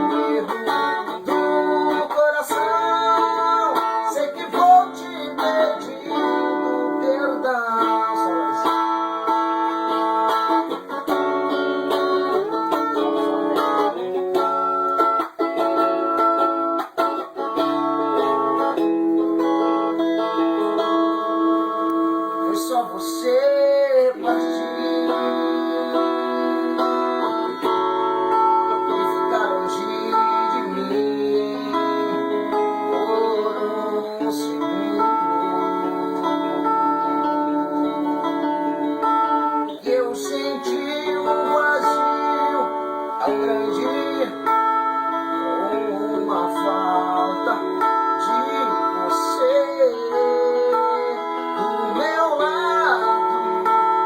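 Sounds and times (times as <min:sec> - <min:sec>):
plucked guitar music: 0:00.0 - 0:54.0.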